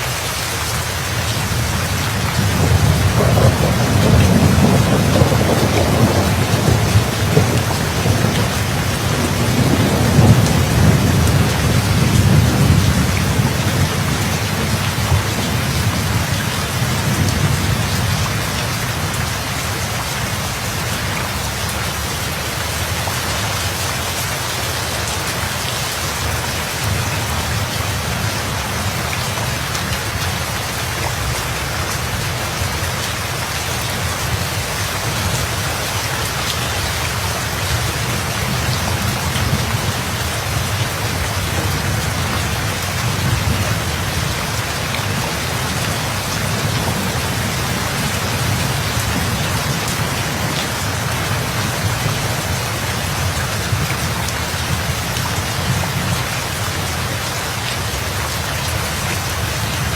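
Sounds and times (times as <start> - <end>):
heavy rainfall: 0.0 - 59.9
low thunder rumble: 1.4 - 19.2, 37.8 - 56.3.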